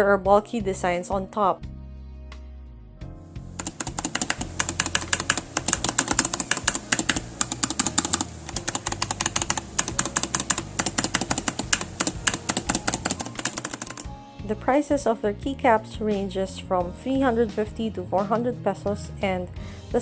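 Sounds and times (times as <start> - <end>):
fast typing on mechanical keyboard: 3.6 - 14.1.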